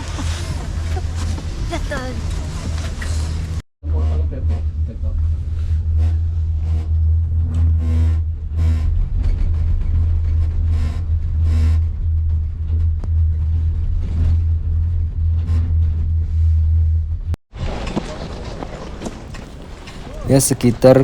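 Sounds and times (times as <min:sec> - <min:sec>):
faint voices: 0:00.0 - 0:03.6
loud low rumble: 0:00.0 - 0:17.4.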